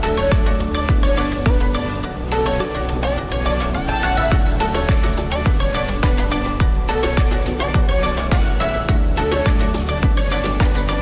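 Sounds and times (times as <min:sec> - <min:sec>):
deep kick drum beat: 0:00.0 - 0:01.8, 0:04.3 - 0:11.0.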